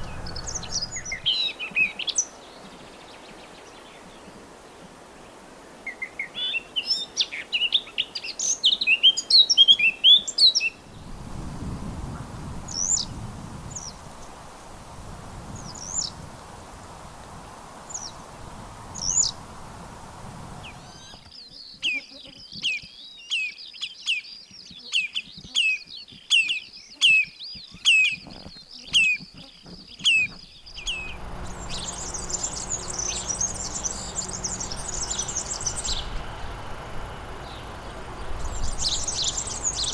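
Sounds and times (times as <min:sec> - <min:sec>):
short high bird calls: 0:00.0 - 0:01.5, 0:30.0 - 0:36.6, 0:37.2 - 0:39.9
fast twittering birdsong: 0:00.0 - 0:04.3, 0:15.4 - 0:16.2, 0:17.0 - 0:39.9
bird song of repeated notes: 0:00.0 - 0:04.4, 0:17.9 - 0:19.8, 0:20.6 - 0:39.9
high buzzing trill: 0:30.7 - 0:39.9.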